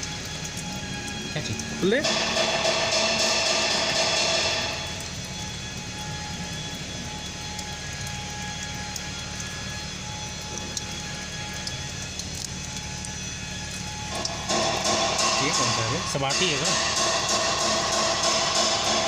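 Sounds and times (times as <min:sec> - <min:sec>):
mechanical drone: 0:08.4 - 0:19.0.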